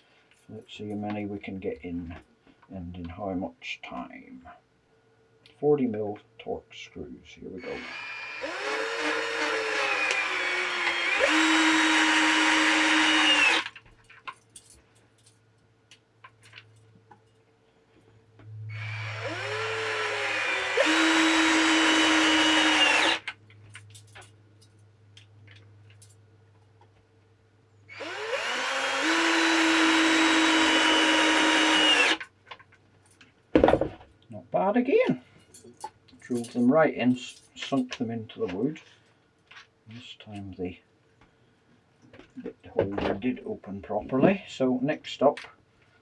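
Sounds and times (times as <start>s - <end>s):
drill driving screws into wood: 7.7s - 13.8s, 18.7s - 23.4s, 27.9s - 32.2s.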